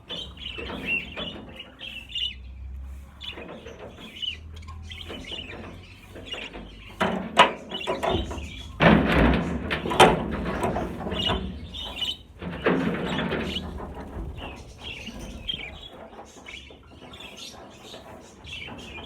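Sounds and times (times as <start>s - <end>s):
budgerigars chirping: 0.0s - 8.8s, 9.8s - 19.0s
rustling and knocking: 3.3s - 16.1s.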